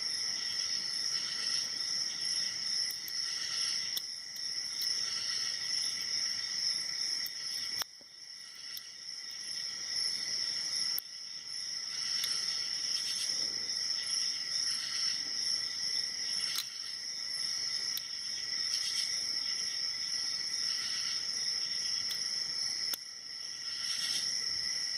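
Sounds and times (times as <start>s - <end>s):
crickets chirring: 0.0s - 24.9s.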